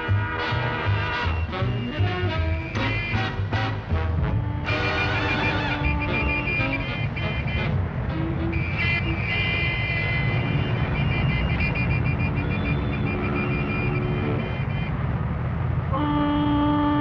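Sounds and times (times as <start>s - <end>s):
deep ship horn blast: 0.0s - 11.1s, 15.9s - 17.0s
vehicle horns tooting: 0.0s - 15.0s, 15.9s - 17.0s
traffic rumble: 0.0s - 17.0s.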